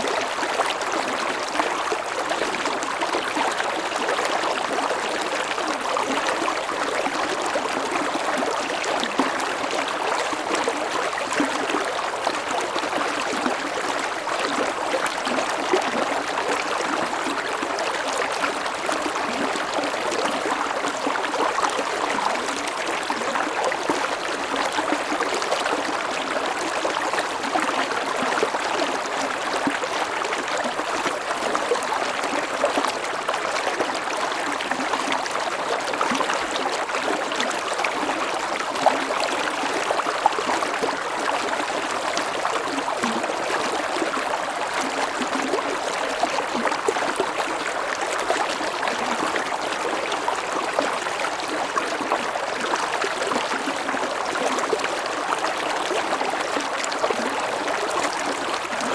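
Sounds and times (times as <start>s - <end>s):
stream flowing over rocks: 0.0s - 58.9s.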